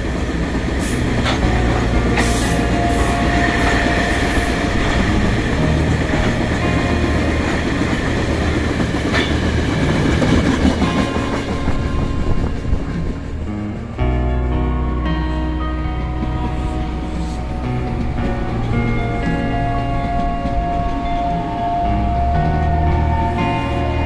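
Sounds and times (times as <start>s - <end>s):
train wheels clicking over rail joints: 0.0s - 13.6s, 16.2s - 24.0s
train rumble: 0.0s - 24.0s.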